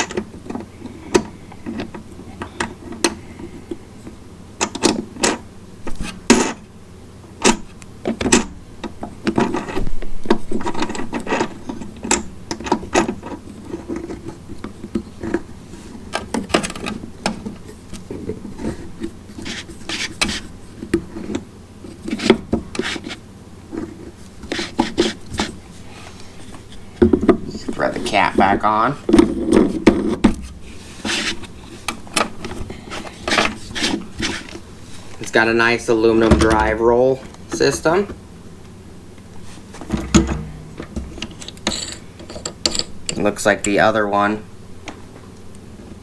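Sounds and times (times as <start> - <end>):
plastic rubbing and scraping: 9.3 - 38.2
plastic parts clicking and knocking: 39.8 - 43.8.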